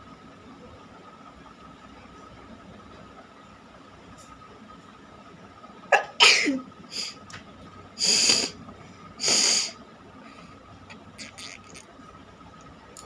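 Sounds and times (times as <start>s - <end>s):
person sneezing: 6.0s - 6.6s
noisy blasts of breath: 8.0s - 10.6s.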